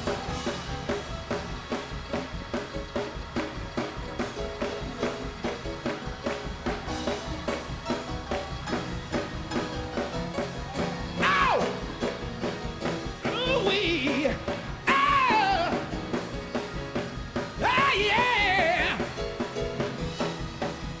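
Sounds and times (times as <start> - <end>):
drum kit fast beat: 0.0 - 21.0
keyboard chords: 0.0 - 21.0.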